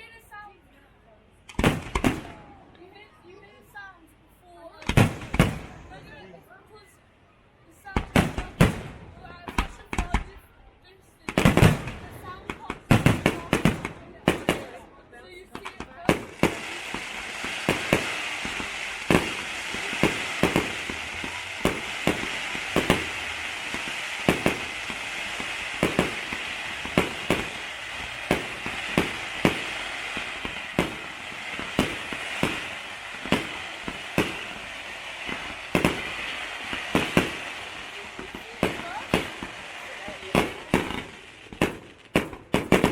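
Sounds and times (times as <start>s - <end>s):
fireworks bangs: 1.5s - 3.6s, 4.8s - 6.4s, 7.9s - 10.5s, 11.2s - 42.9s
crackling hiss: 15.6s - 42.9s.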